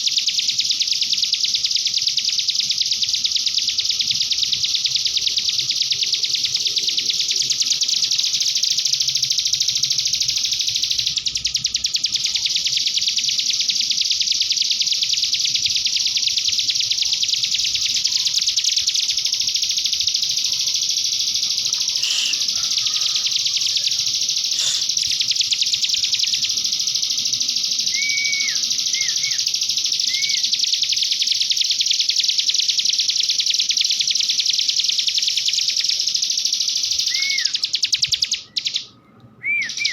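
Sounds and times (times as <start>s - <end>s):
bird trilling song: 3.2s - 39.9s
short whistled bird notes: 21.9s - 25.4s, 27.9s - 30.5s, 37.1s - 37.6s.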